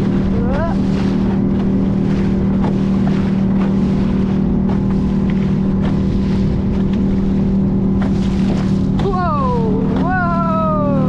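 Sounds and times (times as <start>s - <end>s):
motorboat engine droning: 0.0s - 11.0s
waves slapping: 0.0s - 11.0s.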